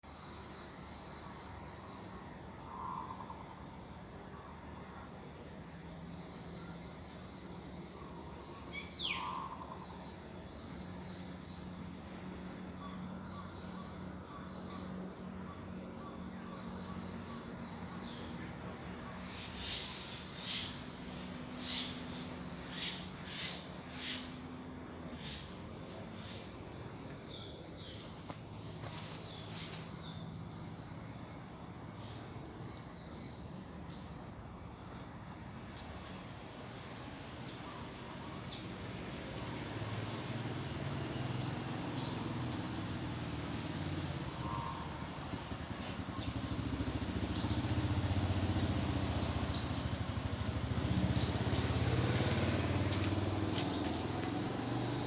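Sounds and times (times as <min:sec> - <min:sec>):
birds calling: 0:00.3 - 0:03.6, 0:06.2 - 0:11.8, 0:12.5 - 0:34.4, 0:39.6 - 0:55.0
vehicle engine running: 0:38.8 - 0:55.0.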